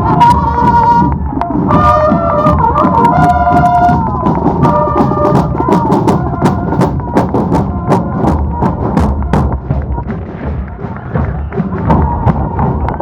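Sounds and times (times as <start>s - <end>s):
drum strokes: 0.0s - 13.0s
sustained bugle notes: 0.1s - 9.3s.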